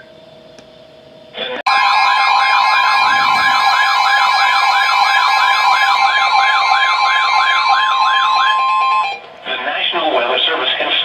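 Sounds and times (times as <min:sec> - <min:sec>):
siren-like warble: 0:01.7 - 0:09.3
steady high alert tone: 0:01.7 - 0:09.3.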